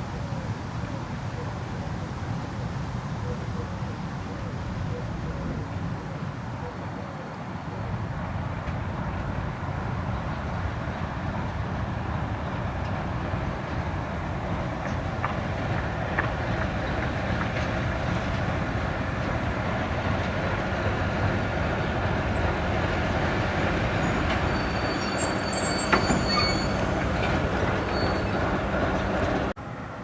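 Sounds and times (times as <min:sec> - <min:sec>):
train wheels rumbling on rail: 0:07.8 - 0:29.9
clicks over rail joints: 0:14.5 - 0:20.6
high wheel squeal: 0:22.3 - 0:29.6.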